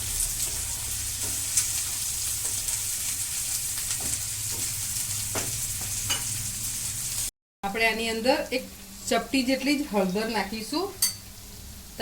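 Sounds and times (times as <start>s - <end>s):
vegetables sizzling in a pan: 0.0s - 12.0s
stirring taps and scrapes: 0.4s - 6.3s.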